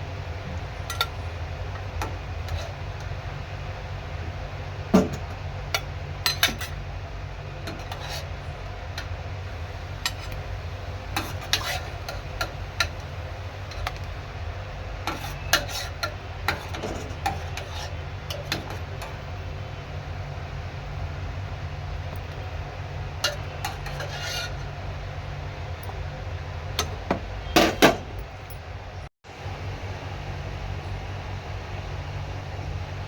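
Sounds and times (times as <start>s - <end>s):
steady low hum: 0.0s - 33.0s
utensils clinking against pot: 5.8s - 6.8s, 11.1s - 13.1s, 15.1s - 19.2s, 23.2s - 24.6s.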